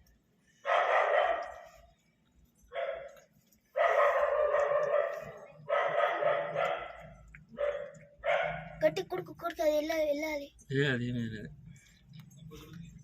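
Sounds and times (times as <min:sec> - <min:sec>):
dog barking: 0:00.6 - 0:01.8, 0:02.7 - 0:08.8.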